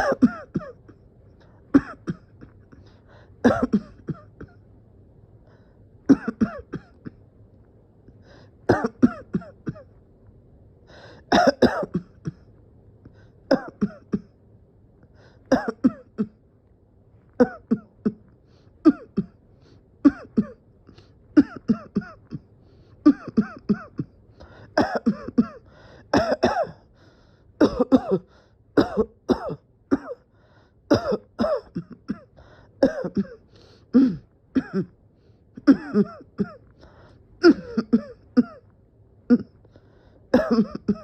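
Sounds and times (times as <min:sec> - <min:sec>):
person coughing harshly: 0:00.0 - 0:01.0, 0:01.7 - 0:04.6, 0:06.1 - 0:07.2, 0:08.7 - 0:09.9, 0:11.2 - 0:12.5, 0:13.5 - 0:14.3, 0:15.5 - 0:16.4, 0:17.4 - 0:19.4, 0:20.0 - 0:20.6, 0:21.4 - 0:26.9, 0:27.6 - 0:30.3, 0:30.9 - 0:34.9, 0:35.6 - 0:36.7, 0:37.4 - 0:38.6, 0:39.3 - 0:39.6, 0:40.3 - 0:41.0.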